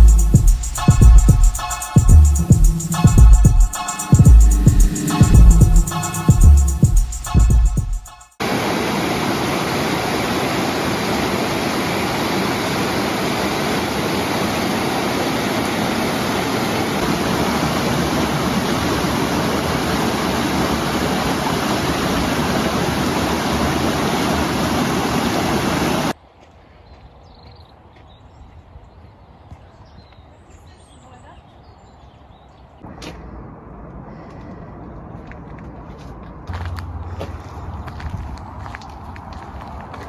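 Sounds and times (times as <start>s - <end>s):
flowing water rushing: 8.4s - 26.2s.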